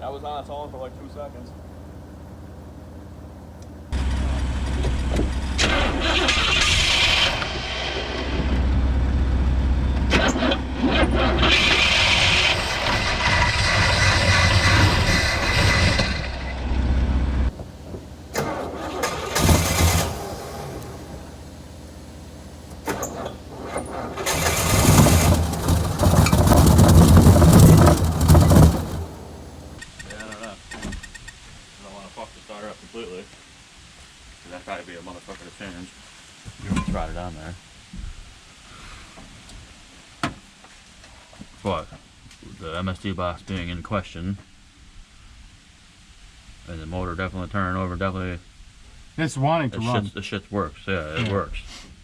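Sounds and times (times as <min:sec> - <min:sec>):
car engine cranking and firing: 0:01.6 - 0:29.8.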